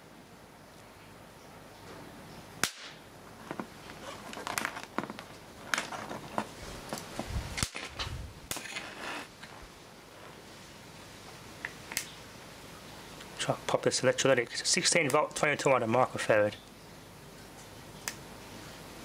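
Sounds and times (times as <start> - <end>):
electrical sparks snapping: 2.6 - 3.0, 7.5 - 9.3.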